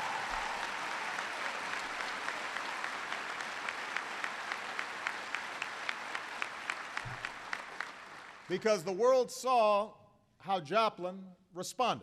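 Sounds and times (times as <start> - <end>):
audience applauding: 0.0 - 8.6.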